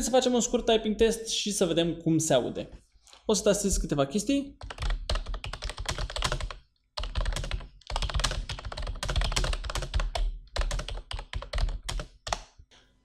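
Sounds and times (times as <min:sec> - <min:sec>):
fast typing on keyboard: 0:04.6 - 0:12.6.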